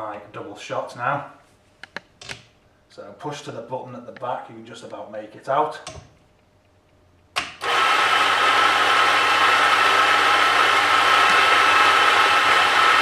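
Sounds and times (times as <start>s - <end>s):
coffee grinder motor grinding: 7.5s - 13.0s.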